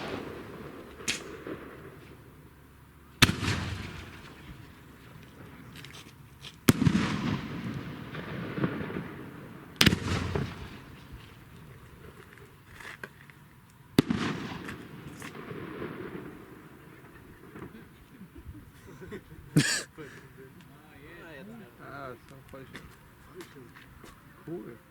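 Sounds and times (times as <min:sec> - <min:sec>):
fireworks bangs: 0:00.0 - 0:02.3, 0:03.2 - 0:12.6, 0:14.0 - 0:19.2.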